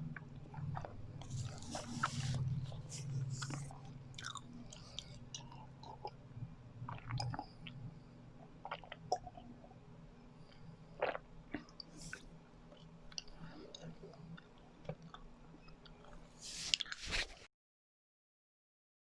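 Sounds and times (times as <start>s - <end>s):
chewing sticky rice cake: 0.0s - 6.2s
wet mouth sounds: 0.1s - 6.2s, 6.9s - 7.8s, 11.0s - 12.2s.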